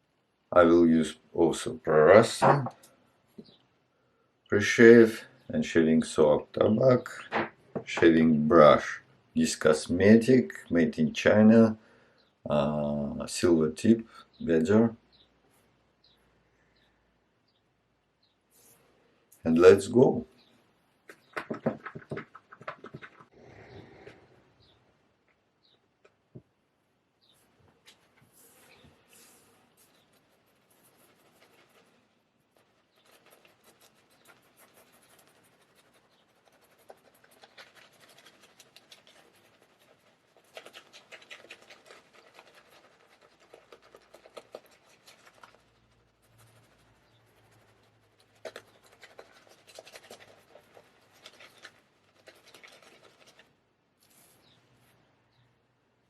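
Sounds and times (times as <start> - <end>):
razor scratching stubble: 29.2 - 31.9, 32.5 - 53.5.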